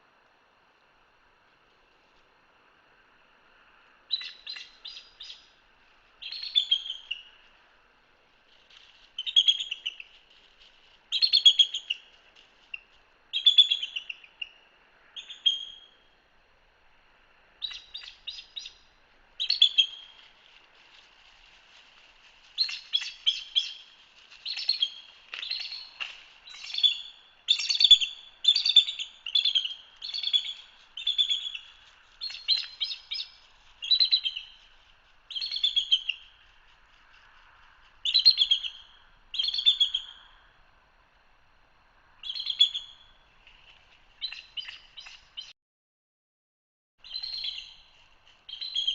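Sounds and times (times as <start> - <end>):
eagle piping calls: 6.2 - 7.4, 9.2 - 10.1, 11.1 - 12.1, 13.4 - 14.6, 19.4 - 20.3, 22.6 - 34.7, 35.3 - 36.4, 38.0 - 40.2, 48.5 - 48.9.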